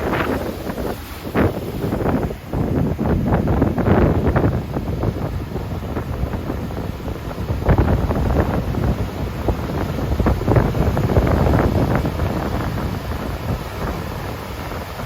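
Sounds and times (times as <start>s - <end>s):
surf breaking: 0.0s - 15.0s
wind buffeting microphone: 0.0s - 15.0s.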